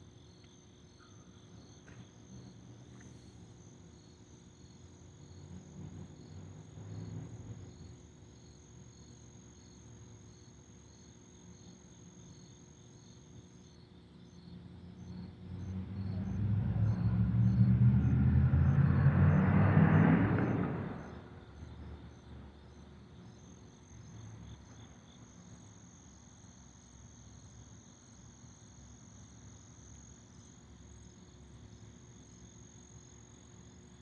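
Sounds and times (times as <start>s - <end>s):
crickets chirping: 0.0s - 34.0s
vehicle passing by: 5.5s - 7.7s, 15.4s - 22.1s.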